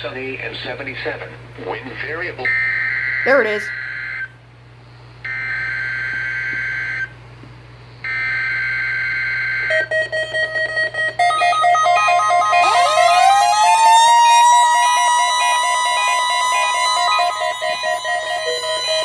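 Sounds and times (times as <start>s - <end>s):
buzzing digital data tones: 8.1s - 19.0s
electronic beeps changing pitch: 9.7s - 19.0s.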